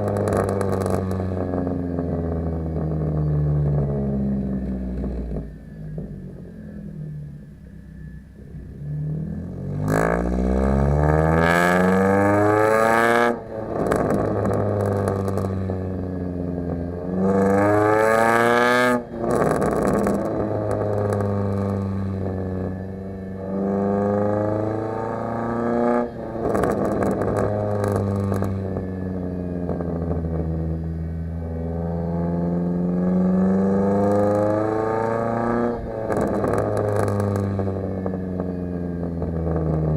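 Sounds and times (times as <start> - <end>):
exhaust pops and crackles: 0.0 - 1.6, 13.8 - 15.7, 19.2 - 22.1, 26.4 - 28.9, 36.0 - 39.9
car engine revving: 0.0 - 39.9.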